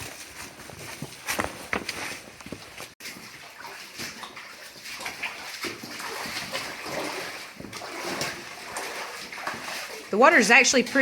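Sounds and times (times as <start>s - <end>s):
footsteps splashing through water: 0.0s - 11.0s.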